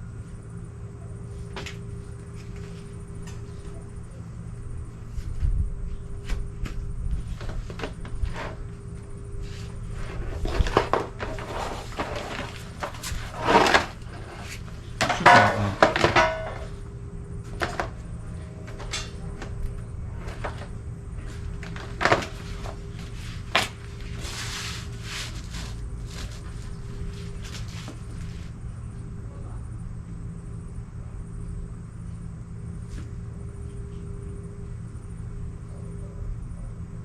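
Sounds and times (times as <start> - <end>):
steady low hum: 0.0 - 37.0
scraping rattle: 10.0 - 16.8.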